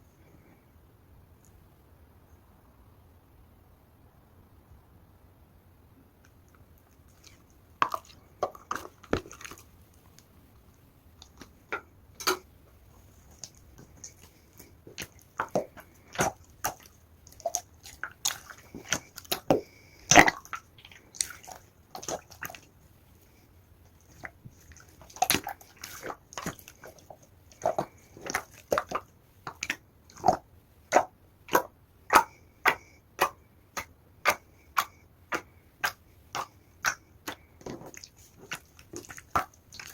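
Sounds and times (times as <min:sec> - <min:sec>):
slime squeezed with wet pops: 0:06.3 - 0:10.3, 0:11.2 - 0:22.8, 0:23.9 - 0:39.9.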